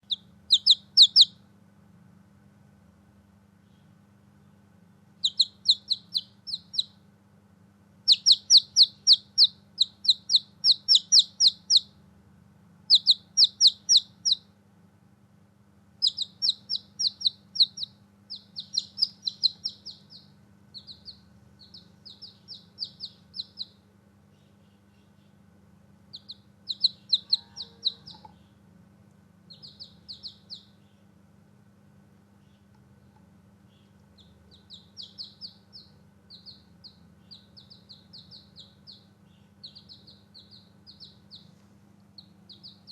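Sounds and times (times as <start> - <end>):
chicks chirping: 0.0 - 1.4, 5.2 - 7.0, 8.0 - 12.0, 12.8 - 14.6, 16.0 - 28.6, 29.5 - 31.1, 32.4 - 42.9.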